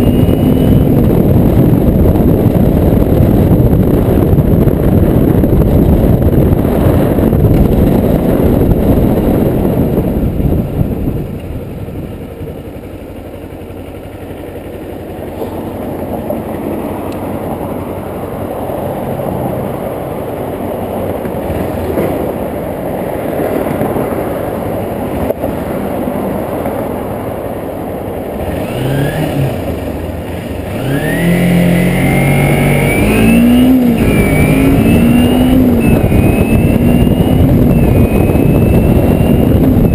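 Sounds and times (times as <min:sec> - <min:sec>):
wind noise on microphone: 0:00.0 - 0:12.7, 0:16.2 - 0:39.9
motorcycle engine revving: 0:28.2 - 0:39.9.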